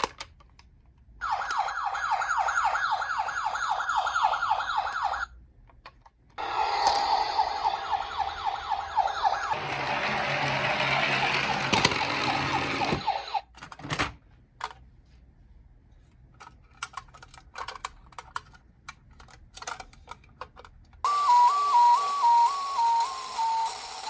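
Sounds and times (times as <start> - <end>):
two-tone ambulance siren: 1.2 - 5.3, 6.4 - 13.5, 21.1 - 24.0
faint siren: 1.2 - 5.4, 6.4 - 13.5, 21.1 - 24.0.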